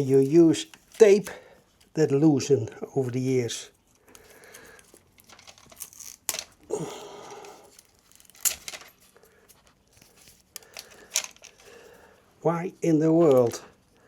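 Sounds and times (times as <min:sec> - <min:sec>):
crinkling tape: 0:00.0 - 0:02.0, 0:03.8 - 0:12.0
tape tearing and peeling: 0:05.2 - 0:06.6, 0:07.7 - 0:08.9.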